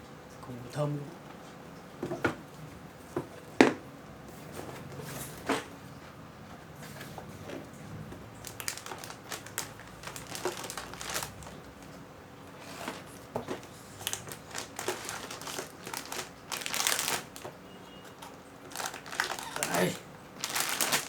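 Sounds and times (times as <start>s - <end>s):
packaging crinkling and rustling: 8.3s - 21.0s.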